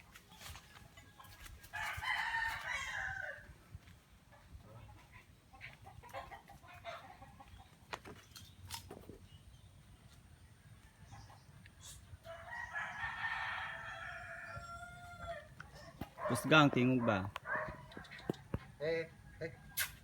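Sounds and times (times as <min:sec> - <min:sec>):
rooster crowing: 0:01.7 - 0:03.5, 0:12.2 - 0:15.6.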